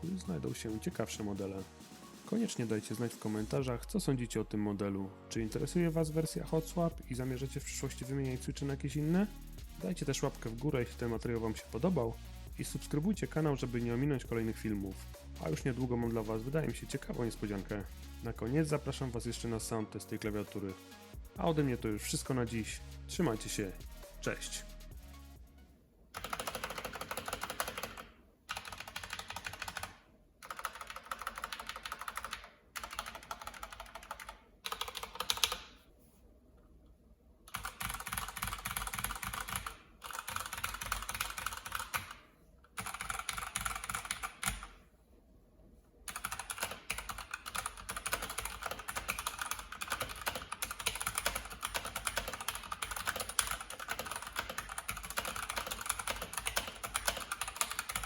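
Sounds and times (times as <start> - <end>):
mechanical keyboard typing: 26.2 - 35.8, 37.5 - 44.8, 46.1 - 58.0.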